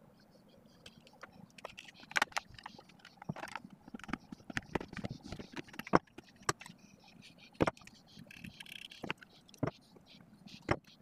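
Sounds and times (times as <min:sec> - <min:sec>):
plastic parts clicking and knocking: 0:00.8 - 0:06.8, 0:07.6 - 0:09.8, 0:10.6 - 0:11.0.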